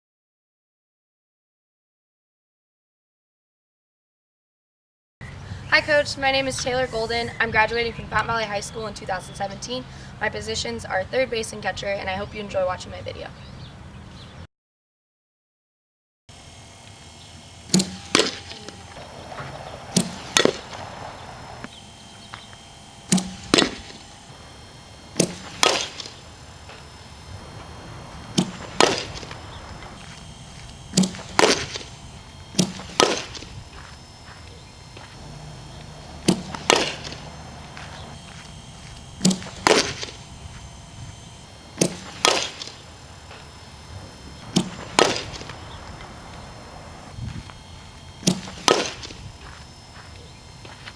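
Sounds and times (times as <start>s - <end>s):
softball bat cracks: 17.7s - 18.8s, 19.9s - 20.8s, 23.1s - 24.0s, 25.2s - 26.2s, 28.3s - 29.4s, 31.0s - 32.0s, 32.6s - 33.5s, 35.2s - 38.1s, 39.2s - 40.2s, 41.8s - 42.8s, 44.5s - 45.7s, 48.3s - 49.2s.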